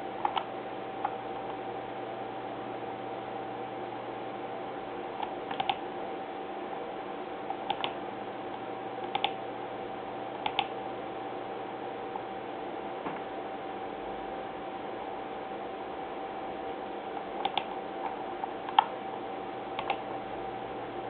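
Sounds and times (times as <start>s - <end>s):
sharp computer clicks: 0.2s - 1.2s, 5.2s - 5.8s, 7.5s - 8.0s, 9.0s - 9.4s, 10.4s - 10.7s, 17.3s - 17.8s, 18.7s - 19.0s, 19.8s - 20.1s.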